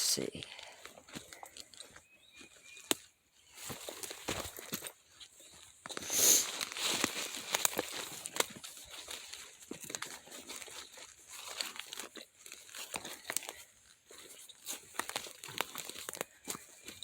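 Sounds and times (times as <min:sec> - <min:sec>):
footsteps crunching dry leaves: 0:00.7 - 0:17.0.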